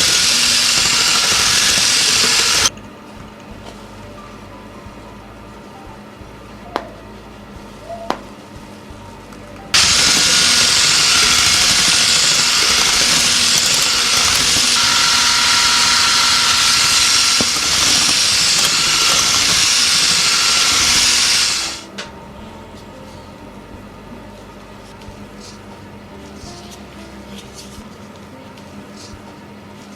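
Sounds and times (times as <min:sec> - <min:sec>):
electric mixer running: 0:00.0 - 0:02.7, 0:09.7 - 0:22.1.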